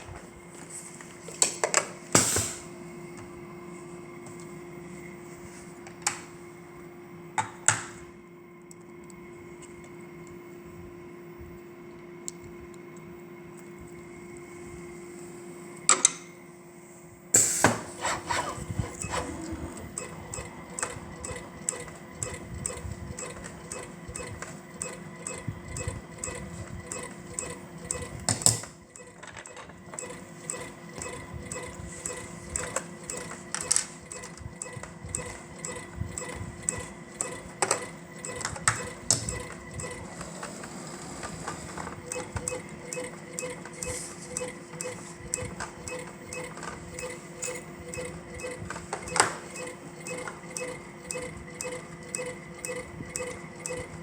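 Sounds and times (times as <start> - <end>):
machinery electrical hum: 0.0 - 54.0
mechanical clicks and clacks: 18.1 - 54.0.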